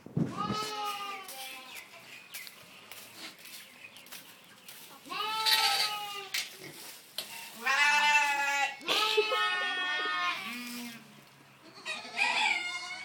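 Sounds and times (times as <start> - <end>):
young farm animal bleating: 0.3 - 1.9, 5.0 - 13.0.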